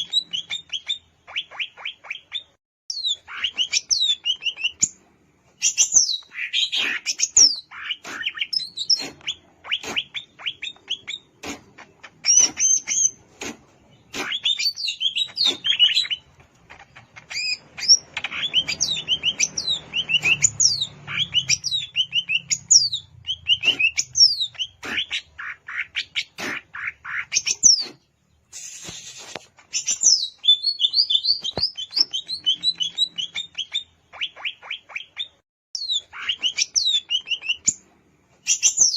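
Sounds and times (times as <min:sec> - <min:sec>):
bird singing whistles and chips: 0:14.0 - 0:16.3, 0:17.2 - 0:25.2, 0:27.3 - 0:37.8, 0:38.4 - 0:38.9.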